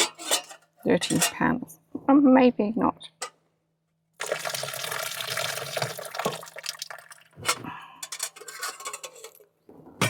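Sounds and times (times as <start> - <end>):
water running into sink: 4.2 - 7.4
pan clinking: 8.0 - 9.4.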